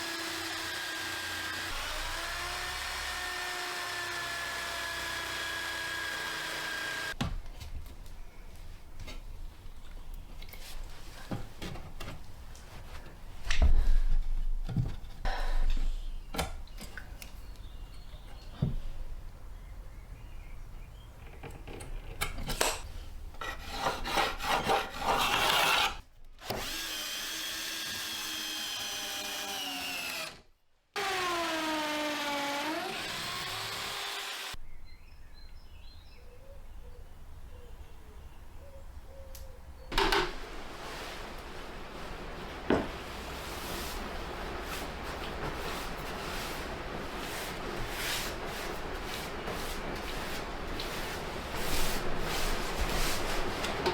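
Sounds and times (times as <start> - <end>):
power drill drilling into wood: 0.0 - 7.2, 26.4 - 30.4, 31.0 - 34.6.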